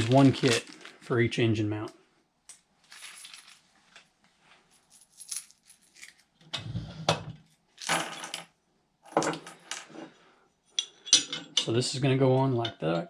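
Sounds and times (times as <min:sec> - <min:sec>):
bolts and washers clinking: 0:10.7 - 0:12.9.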